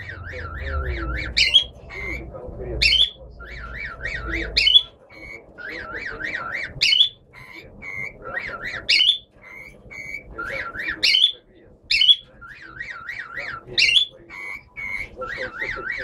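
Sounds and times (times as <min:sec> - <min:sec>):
parrot imitating car alarm: 0:11.0 - 0:16.0.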